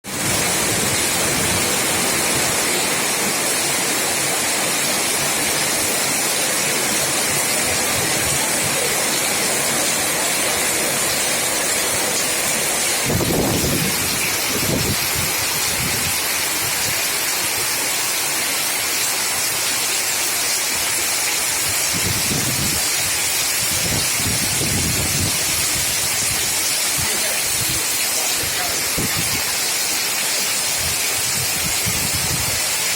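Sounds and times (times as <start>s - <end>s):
strong wind gusts: 0.0s - 4.6s, 6.8s - 17.1s, 21.6s - 29.6s, 30.7s - 32.8s
heavy rain: 0.0s - 32.9s.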